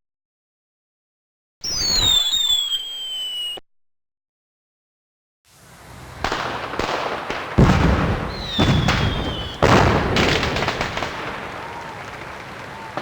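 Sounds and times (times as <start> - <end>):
fireworks booming: 1.6 - 3.3, 5.5 - 13.0
fireworks crackle: 1.6 - 3.6, 5.5 - 13.0
high whistle: 1.6 - 3.6, 8.3 - 9.6.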